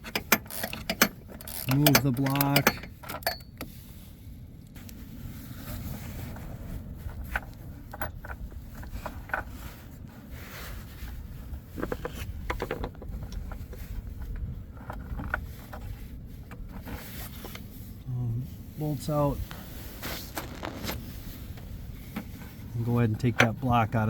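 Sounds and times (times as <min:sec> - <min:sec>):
ratchet clicking and scraping: 0:00.0 - 0:03.6
low rumble: 0:17.7 - 0:22.9.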